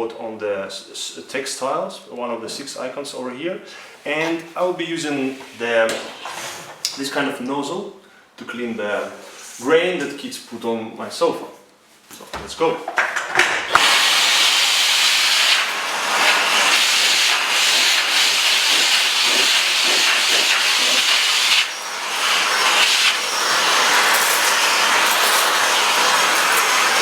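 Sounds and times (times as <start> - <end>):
vacuum cleaner running: 13.6 - 27.0.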